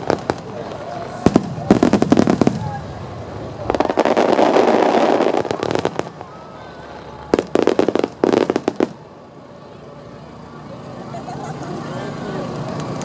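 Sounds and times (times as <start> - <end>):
sharp firework reports: 0.0 - 9.7
fireworks crackling bursts: 0.0 - 10.9, 12.1 - 13.0.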